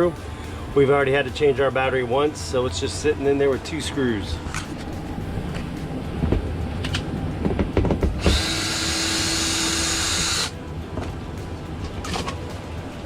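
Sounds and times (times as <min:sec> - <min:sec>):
power drill running: 0:08.2 - 0:10.5.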